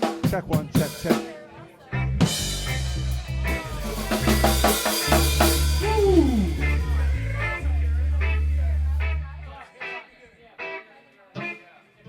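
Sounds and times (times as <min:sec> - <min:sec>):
long held bass notes: 0:02.0 - 0:09.6
drum kit hits: 0:02.3 - 0:07.9
cymbals: 0:02.4 - 0:08.5.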